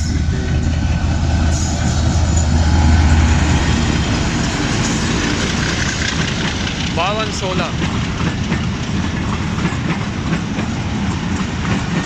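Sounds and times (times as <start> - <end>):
low drone: 0.0 - 7.0
train wheels clattering on rails: 0.0 - 12.0.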